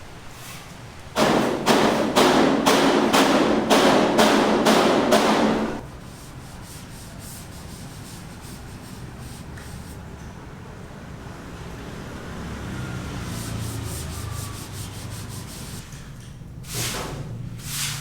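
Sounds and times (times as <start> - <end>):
rhythmic scraping strokes: 13.3 - 15.9.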